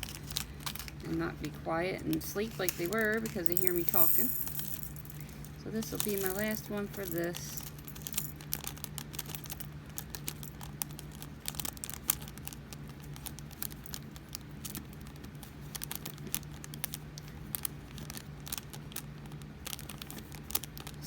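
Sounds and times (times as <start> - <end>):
low hum: 0.0 - 14.3
plastic bags crinkling: 0.0 - 21.0
small beads clicking and rattling: 0.0 - 21.0.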